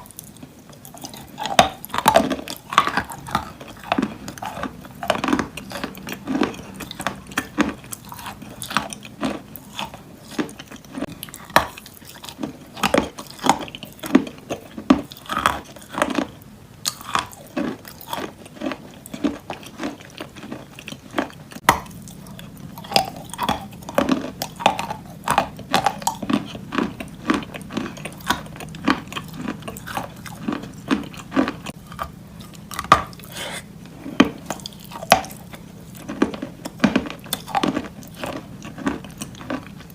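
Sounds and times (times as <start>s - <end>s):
wet chewing: 0.0s - 39.9s.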